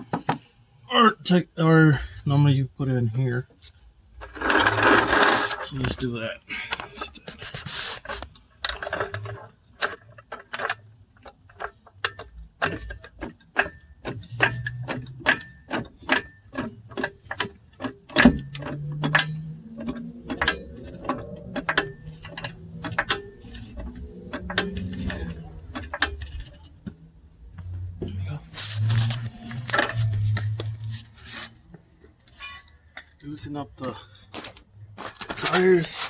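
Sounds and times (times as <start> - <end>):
car jack clicking: 8.7 - 27.0.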